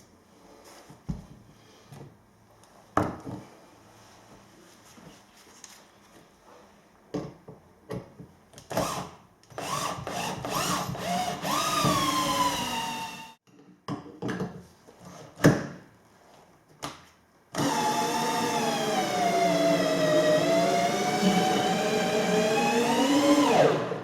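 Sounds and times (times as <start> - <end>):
power drill whining: 8.7 - 13.4, 17.6 - 24.0.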